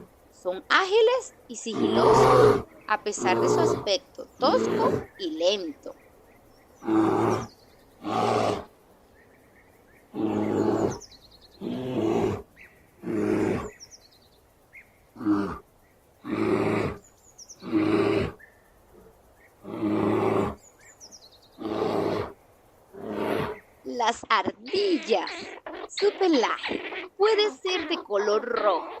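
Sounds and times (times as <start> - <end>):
faint bird chirps: 0.0 - 19.7, 20.4 - 21.7
bear roaring and growling: 1.6 - 5.3, 6.8 - 8.7, 10.1 - 11.0, 11.6 - 13.8, 15.2 - 17.0, 17.6 - 20.6, 21.6 - 23.6, 24.6 - 29.0.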